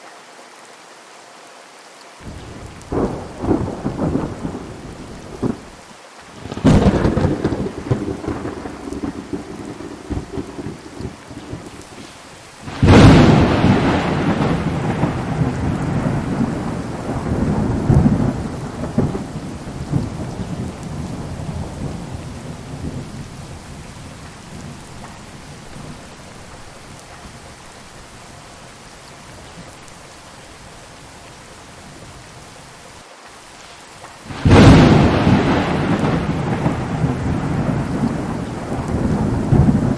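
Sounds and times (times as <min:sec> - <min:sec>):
hard rain: 0:00.0 - 0:39.9
thunder claps and rumble: 0:02.2 - 0:05.8, 0:06.4 - 0:12.0, 0:12.6 - 0:27.4, 0:34.3 - 0:39.9.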